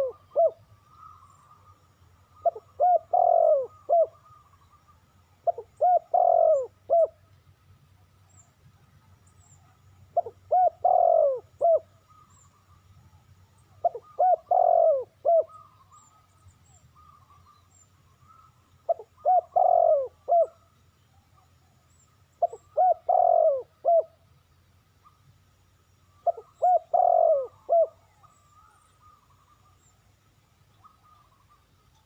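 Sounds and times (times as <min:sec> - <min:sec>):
dove cooing: 0:00.0 - 0:01.7, 0:02.3 - 0:04.7, 0:05.4 - 0:07.2, 0:10.0 - 0:12.6, 0:13.6 - 0:16.1, 0:18.3 - 0:20.7, 0:22.4 - 0:24.2, 0:26.2 - 0:29.8
small birds chirping: 0:00.0 - 0:32.0.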